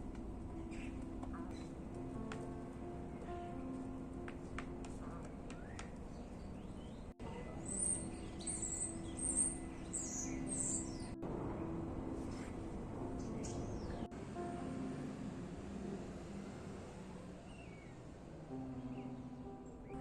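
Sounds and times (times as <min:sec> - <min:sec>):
birds chirping: 0:00.5 - 0:02.3, 0:04.9 - 0:14.1, 0:17.4 - 0:20.0.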